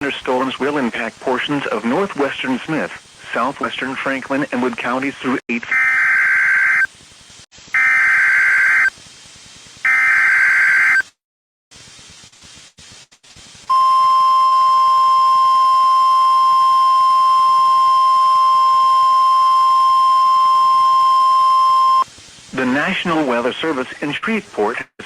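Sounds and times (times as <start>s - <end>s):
screeching digital data bursts: 5.5s - 6.9s, 7.7s - 9.0s, 9.8s - 11.1s.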